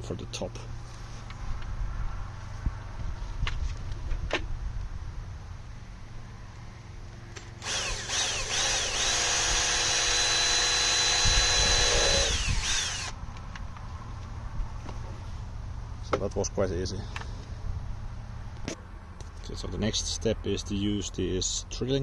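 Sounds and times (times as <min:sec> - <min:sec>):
power drill drilling: 0:07.6 - 0:13.2.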